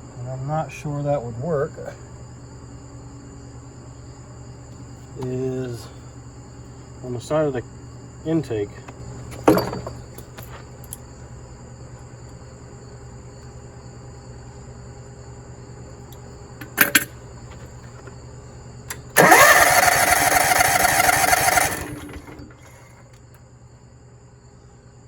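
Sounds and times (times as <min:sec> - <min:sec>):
small engine cranking by starter: 0:18.9 - 0:23.2.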